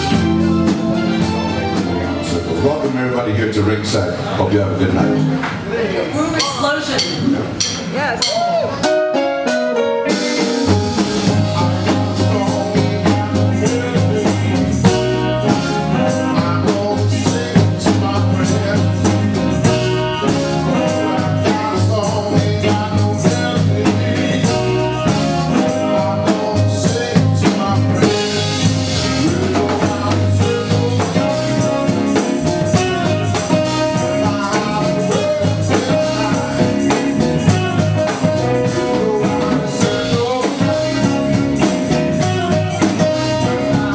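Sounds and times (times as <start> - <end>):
drum kit beat: 0.0 - 3.1, 6.2 - 43.9
bass line: 0.0 - 5.4, 6.3 - 43.9
live band playing: 0.0 - 43.9
person singing: 9.8 - 43.9.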